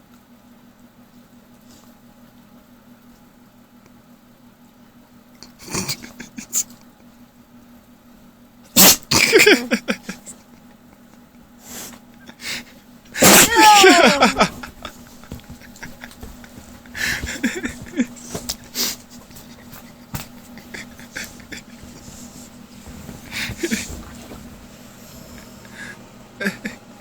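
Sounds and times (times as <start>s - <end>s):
dog sneezing: 8.7s - 9.5s, 13.2s - 14.7s, 18.2s - 19.6s
dog snorting: 15.3s - 25.6s.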